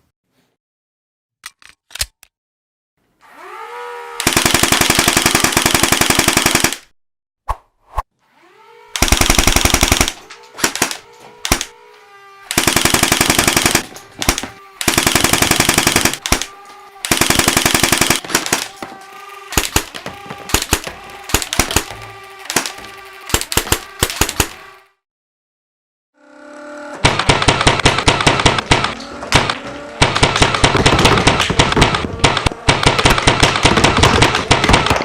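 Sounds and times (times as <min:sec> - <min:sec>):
automatic gunfire: 0:04.2 - 0:06.8, 0:09.0 - 0:11.7, 0:12.5 - 0:24.6, 0:27.0 - 0:35.0.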